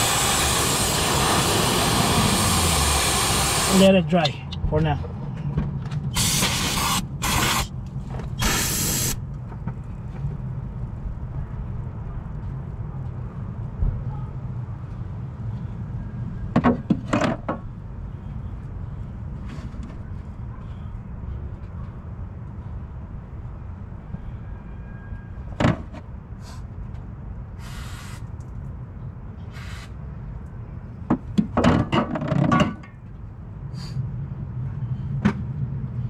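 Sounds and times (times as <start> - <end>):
aerosol spray hissing: 0.0 - 3.8, 6.2 - 7.7, 8.4 - 9.2, 27.6 - 28.2
steady low rumble: 0.0 - 16.6, 32.9 - 36.0.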